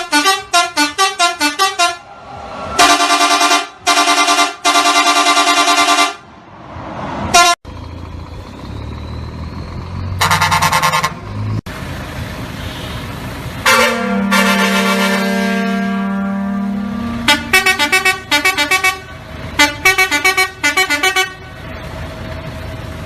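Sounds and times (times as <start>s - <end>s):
vehicle horn blasts: 0.0s - 2.0s, 2.8s - 6.2s, 7.3s - 7.6s, 10.2s - 11.2s, 13.6s - 21.5s
low engine rumble: 6.4s - 23.0s.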